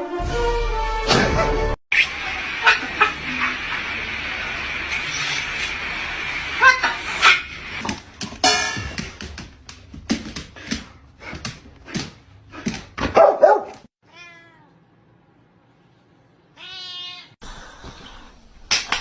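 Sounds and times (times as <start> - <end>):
sharp knocks and clatter: 7.8 - 13.2
cat meowing: 14.0 - 14.8, 16.6 - 17.4.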